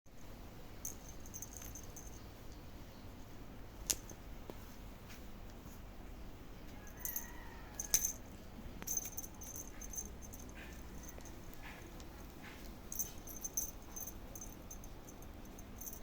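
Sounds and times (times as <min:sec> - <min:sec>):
small jingle bell ringing: 0:00.8 - 0:02.4, 0:06.8 - 0:16.0.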